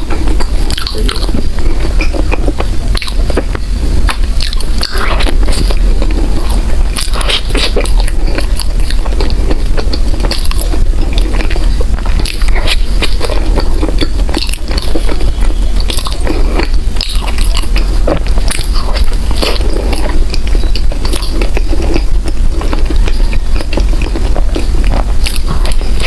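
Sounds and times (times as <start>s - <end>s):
low steady hum: 0.0s - 26.0s
person chewing bread: 0.0s - 26.0s.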